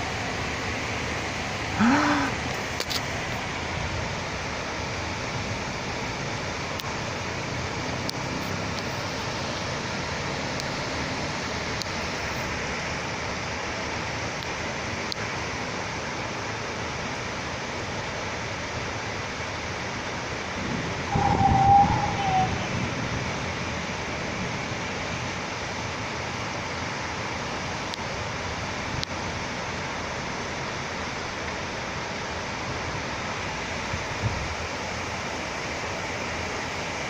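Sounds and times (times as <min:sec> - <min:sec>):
steady rainfall: 0:00.0 - 0:37.0
raindrop ticks: 0:06.7 - 0:06.9.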